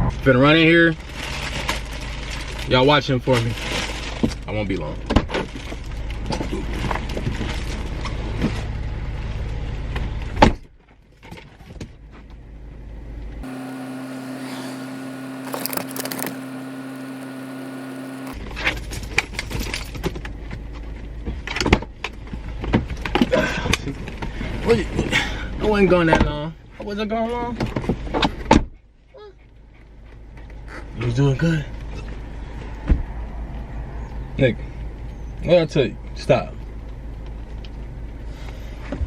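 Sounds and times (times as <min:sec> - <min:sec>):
car engine idling rumble: 0:15.2 - 0:39.0
rustling: 0:15.4 - 0:16.6.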